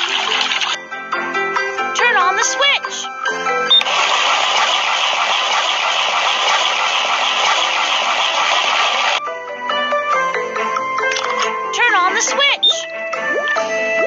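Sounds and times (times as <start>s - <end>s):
concrete mixer rushing noise: 3.9s - 9.2s.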